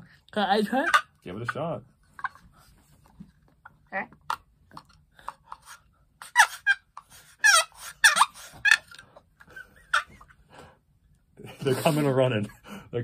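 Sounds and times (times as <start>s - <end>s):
box turkey call scraping: 5.5s - 9.1s.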